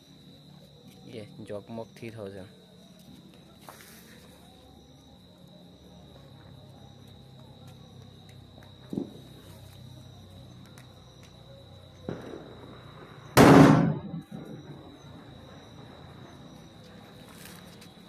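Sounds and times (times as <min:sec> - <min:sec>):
insects trilling: 0:00.0 - 0:18.0
firecracker bang: 0:08.9 - 0:09.3, 0:12.1 - 0:14.9.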